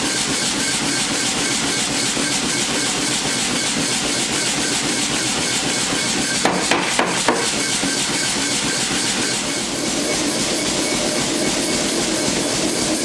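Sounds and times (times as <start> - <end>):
mechanical shop noise: 5.8 - 12.0.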